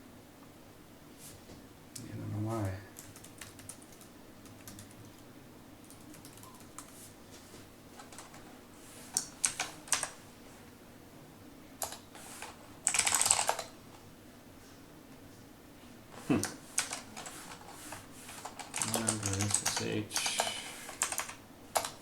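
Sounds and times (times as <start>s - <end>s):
typing on a keyboard: 3.0s - 5.2s, 5.8s - 7.0s, 8.0s - 8.4s, 9.1s - 10.2s, 11.8s - 13.7s, 16.8s - 17.6s, 18.4s - 22.0s.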